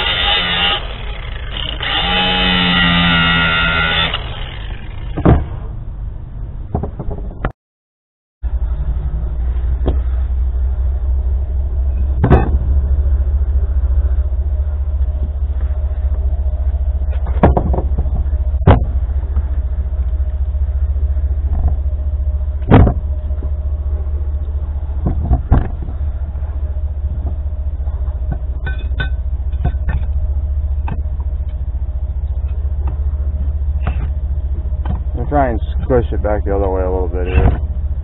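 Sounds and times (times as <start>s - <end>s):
low rumble: 0.0s - 7.5s, 8.4s - 38.0s
sharp knocks: 5.0s - 5.7s, 12.2s - 12.7s, 17.2s - 18.9s, 22.6s - 23.0s, 33.8s - 34.2s
faint steady hum: 8.4s - 38.0s.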